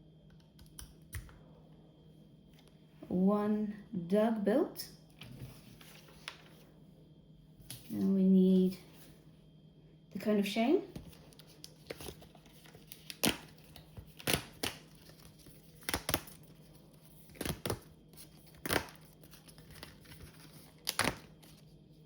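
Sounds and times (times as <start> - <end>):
packaging tearing and crinkling: 11.3 - 21.6.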